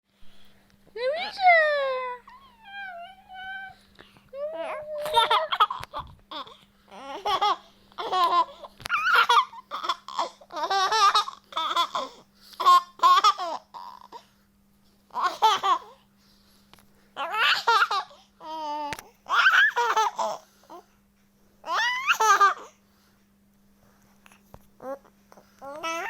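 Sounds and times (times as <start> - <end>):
baby laughing: 4.5 - 14.2, 15.2 - 16.0, 17.2 - 20.4, 21.7 - 22.7.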